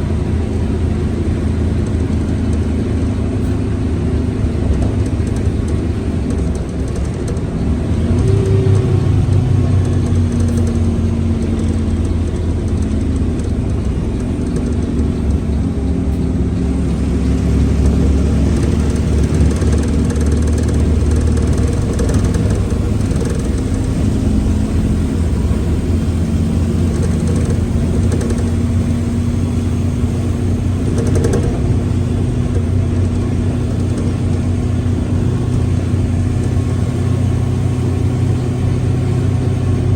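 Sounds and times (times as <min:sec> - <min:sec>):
bus diesel engine humming: 0:00.0 - 0:39.9
gearbox growling: 0:03.4 - 0:38.1.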